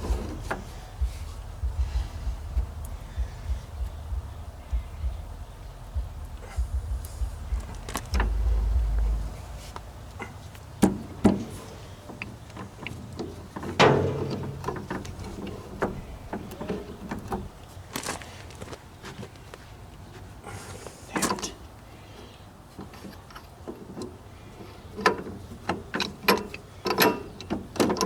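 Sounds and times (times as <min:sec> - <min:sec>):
low rumble: 0:00.0 - 0:12.1, 0:13.8 - 0:17.6
metal clanks and knocks: 0:06.2 - 0:17.6
loud ringing metal strike: 0:06.5 - 0:11.8, 0:13.8 - 0:16.8.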